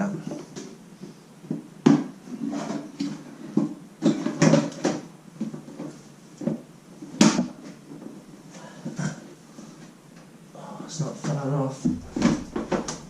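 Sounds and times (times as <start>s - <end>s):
knocks and clatter of parts: 11.9s - 13.0s.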